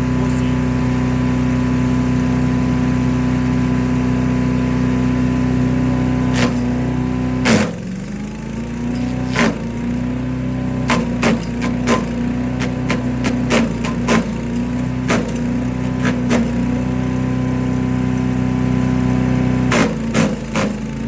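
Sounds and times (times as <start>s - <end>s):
wood chipper engine running: 0.0s - 21.0s
branch cracking in chipper: 8.8s - 9.9s, 10.8s - 16.8s.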